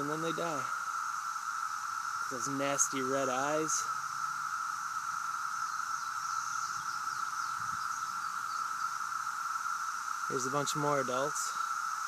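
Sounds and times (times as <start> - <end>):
cicadas droning: 0.0 - 12.0.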